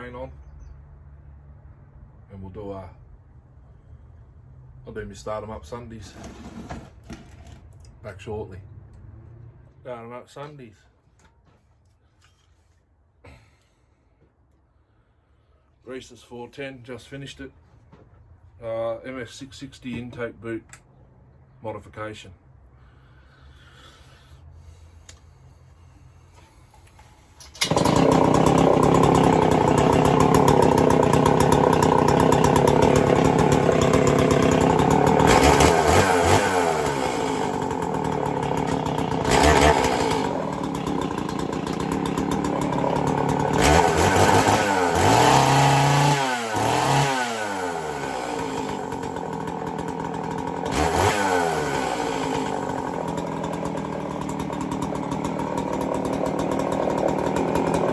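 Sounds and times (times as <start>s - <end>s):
chainsaw starting and revving: 6.0s - 7.7s, 27.0s - 57.9s.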